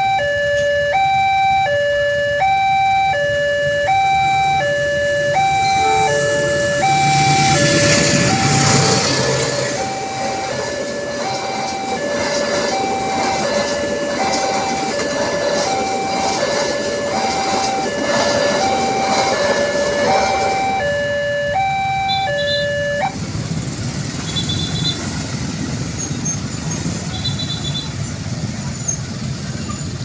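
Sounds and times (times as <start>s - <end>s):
level-crossing two-tone alarm: 0.0s - 23.2s
low rumble of traffic: 0.0s - 30.0s.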